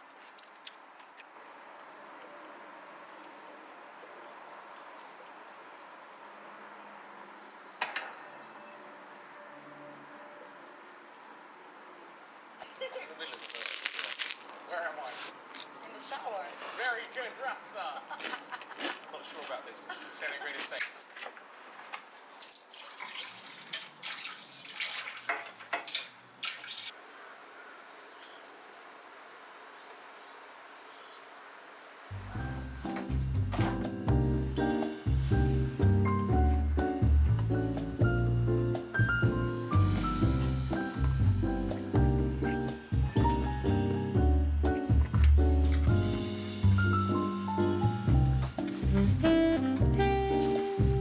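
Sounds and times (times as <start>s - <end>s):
tap water running and splashing: 22.4s - 27.0s
steady low hiss: 26.2s - 51.0s.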